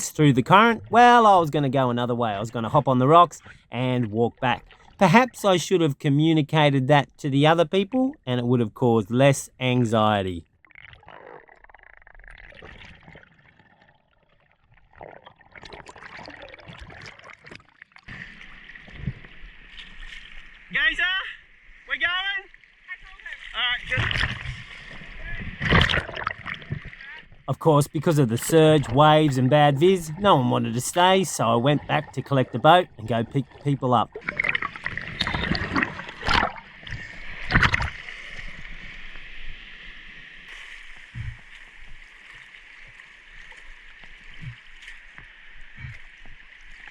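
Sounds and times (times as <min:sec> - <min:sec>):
water sloshing and splashing: 0:00.0 - 0:05.0, 0:10.5 - 0:46.9.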